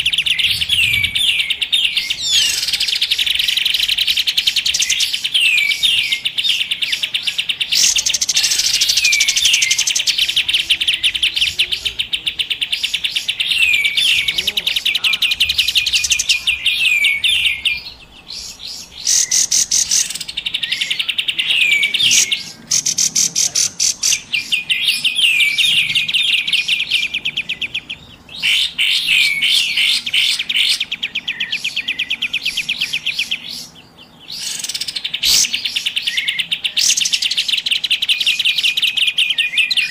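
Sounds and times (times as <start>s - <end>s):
birds chattering trills: 0.0s - 39.9s.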